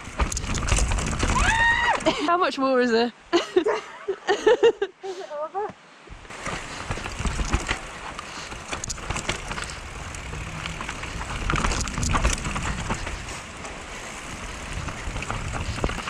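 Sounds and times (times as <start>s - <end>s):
bike clattering over bumps: 0.0s - 2.1s, 6.3s - 16.0s
bike tyres rolling over dirt: 0.0s - 2.2s, 6.3s - 16.0s
low rumble: 9.4s - 13.4s.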